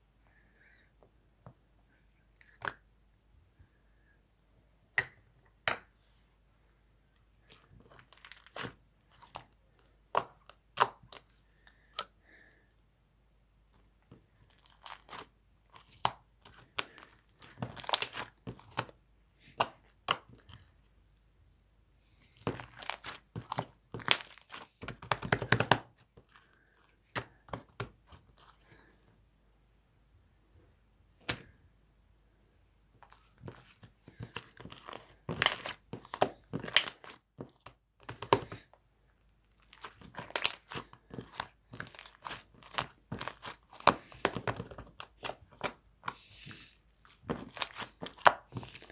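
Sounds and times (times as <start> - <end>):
slime crackling and popping: 14.4 - 18.9, 22.3 - 25.9, 33.1 - 38.6, 39.5 - 48.9.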